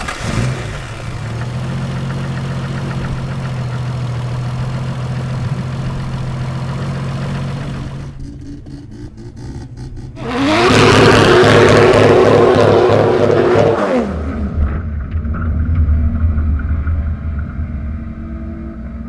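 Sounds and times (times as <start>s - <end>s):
car engine idling: 0.0s - 14.7s.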